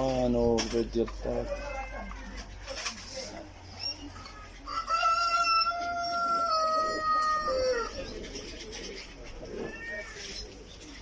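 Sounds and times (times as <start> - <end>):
rooster crowing: 4.6 - 8.0.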